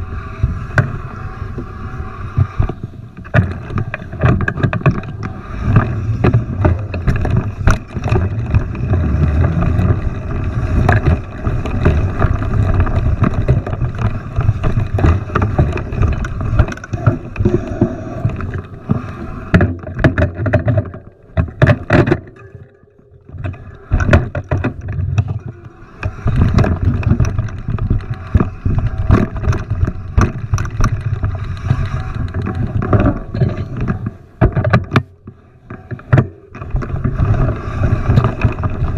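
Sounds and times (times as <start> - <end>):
steady rumble: 0.0 - 38.9
bike rattling and knocking: 3.1 - 18.9, 19.5 - 38.9.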